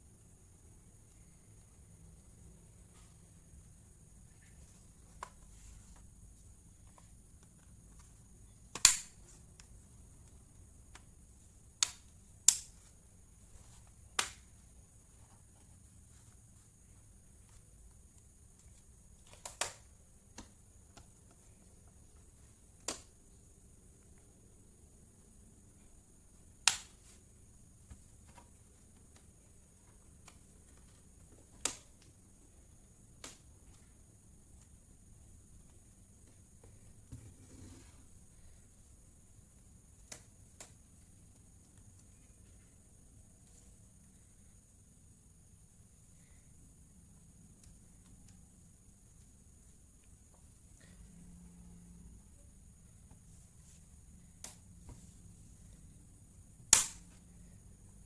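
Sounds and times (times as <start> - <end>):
laptop parts snapping together: 8.7 - 9.3, 56.7 - 57.1.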